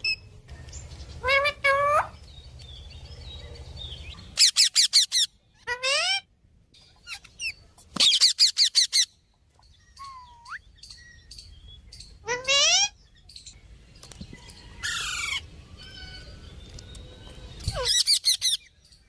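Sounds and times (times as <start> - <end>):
parrot squawking: 1.2 - 2.2, 4.4 - 6.3, 12.2 - 13.0.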